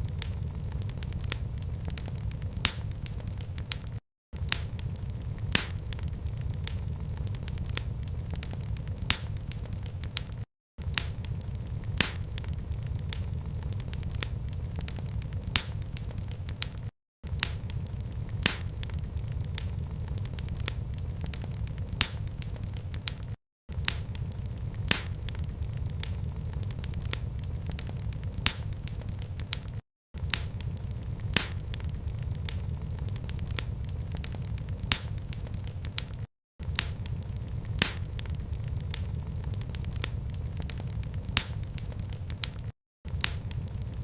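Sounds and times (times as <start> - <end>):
low rumble: 0.0 - 2.7, 4.5 - 9.1
sharp pops and snaps: 0.0 - 44.0
wood fire crackling: 0.0 - 44.0.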